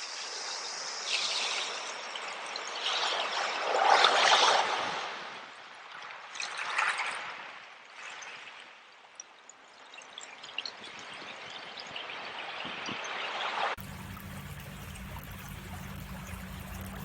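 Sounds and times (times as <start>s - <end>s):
water trickling in a stream: 6.2s - 13.2s, 13.8s - 17.0s.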